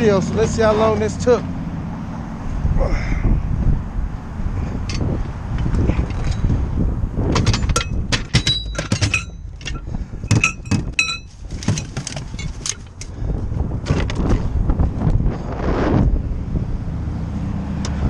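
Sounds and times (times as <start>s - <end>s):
wind rumble on microphone: 0.0s - 18.0s
metal tools clanking: 4.8s - 6.6s, 7.3s - 13.1s.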